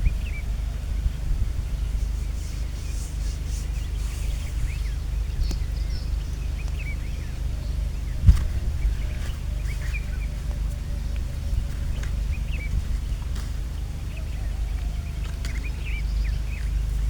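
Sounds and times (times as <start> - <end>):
small birds chirping: 0.0 - 17.0
steady low rumble: 0.0 - 17.0.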